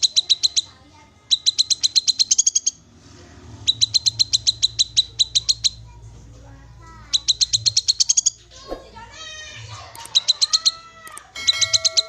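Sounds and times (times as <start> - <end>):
bird trill: 0.0 - 2.9, 3.6 - 6.0, 7.0 - 8.5, 10.0 - 12.0
bird chip notes: 11.4 - 12.0.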